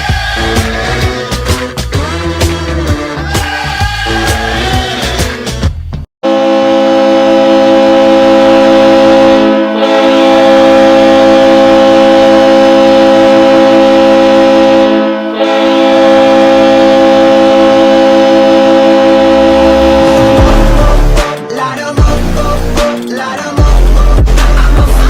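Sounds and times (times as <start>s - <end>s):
arena air horn blasts: 6.2s - 21.2s.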